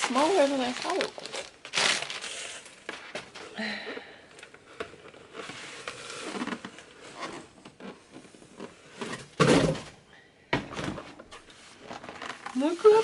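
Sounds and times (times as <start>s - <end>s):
packaging rustling: 0.0s - 3.5s.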